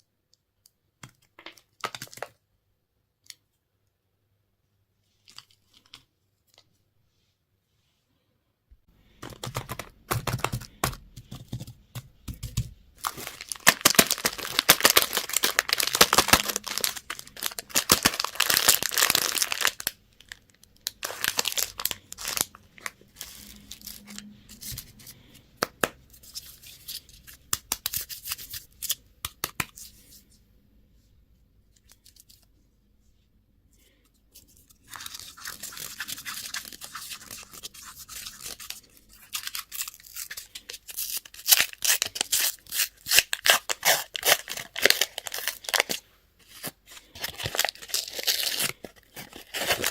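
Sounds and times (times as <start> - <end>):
plastic wrappers crinkling: 13.0 - 24.9, 34.4 - 49.9.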